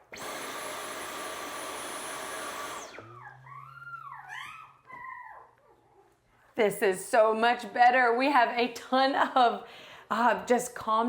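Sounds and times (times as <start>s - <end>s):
vacuum cleaner rushing noise: 0.0s - 3.2s.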